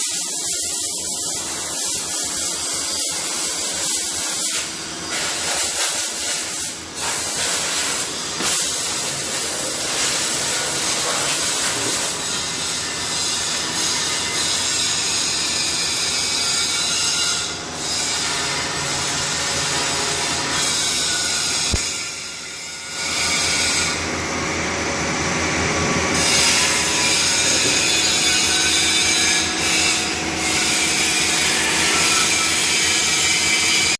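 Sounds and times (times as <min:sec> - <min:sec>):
arc welding hiss: 0:00.0 - 0:12.8.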